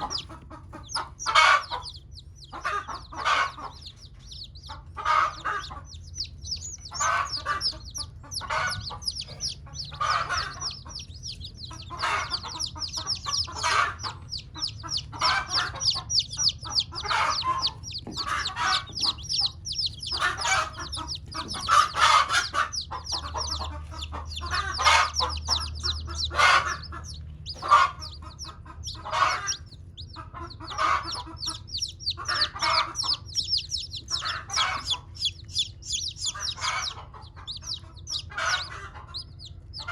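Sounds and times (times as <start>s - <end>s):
chicks peeping: 0.0s - 39.9s
hen clucking: 0.0s - 39.9s.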